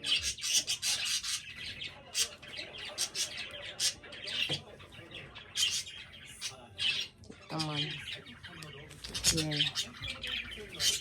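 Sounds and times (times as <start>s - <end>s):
pet bird chirping and squawking: 0.0s - 4.6s, 5.5s - 8.3s.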